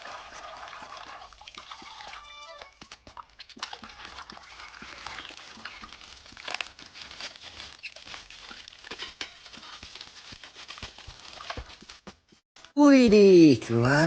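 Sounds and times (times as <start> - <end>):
packaging rustling: 1.6 - 12.4.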